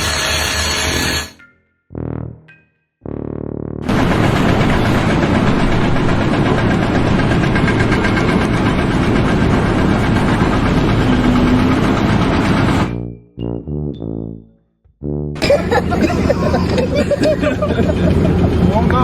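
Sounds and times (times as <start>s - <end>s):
loud machine engine running: 3.8s - 13.0s, 15.4s - 19.0s.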